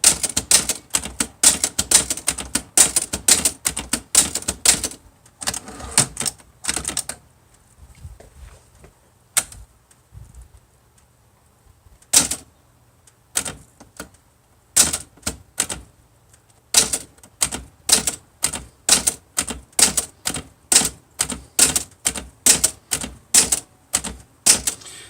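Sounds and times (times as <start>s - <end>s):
manual typewriter keystrokes: 0.0s - 7.2s, 12.0s - 12.5s, 13.3s - 24.9s.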